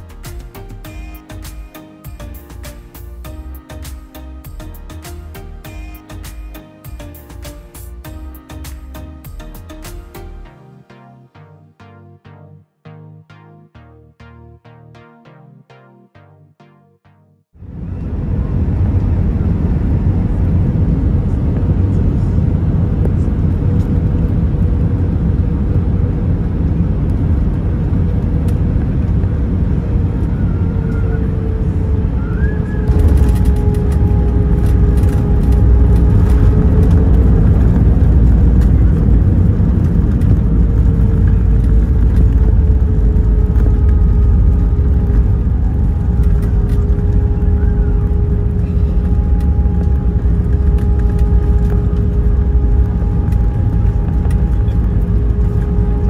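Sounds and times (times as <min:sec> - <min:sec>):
engine and airflow rumble: 0:17.6 - 0:56.0
faint steady whines: 0:17.6 - 0:56.0.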